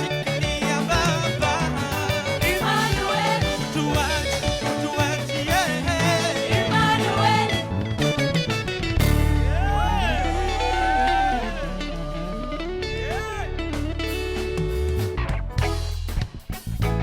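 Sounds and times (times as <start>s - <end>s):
person singing: 0.0s - 8.2s, 9.4s - 14.2s
bass line: 0.0s - 17.0s
drums: 0.0s - 17.0s
gospel band playing: 0.0s - 17.0s.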